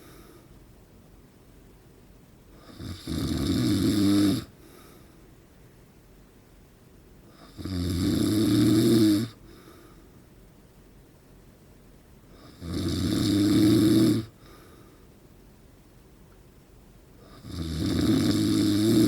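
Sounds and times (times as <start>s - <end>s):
man snoring: 2.6s - 4.5s, 7.3s - 9.4s, 12.4s - 14.4s, 17.2s - 19.0s.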